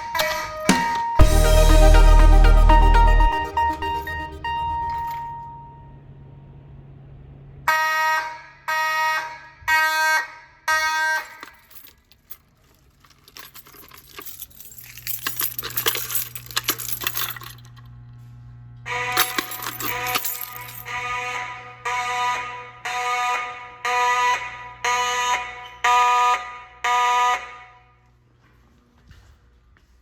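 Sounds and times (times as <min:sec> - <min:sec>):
fire alarm horn blasts: 0:00.0 - 0:06.1, 0:07.7 - 0:11.3, 0:18.8 - 0:28.0
clicking and rattling: 0:11.2 - 0:17.9, 0:19.2 - 0:21.0.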